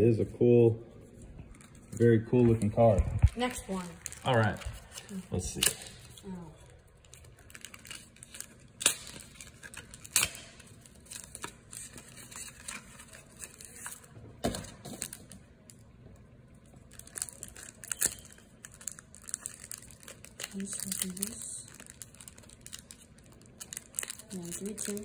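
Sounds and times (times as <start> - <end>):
foil wrapper tearing and crinkling: 3.4 - 6.2, 7.0 - 14.1, 16.8 - 25.0.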